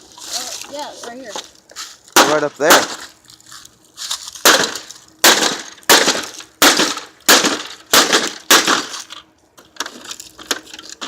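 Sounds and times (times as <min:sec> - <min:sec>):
air conditioner being smashed: 0:02.1 - 0:03.2, 0:04.1 - 0:11.0.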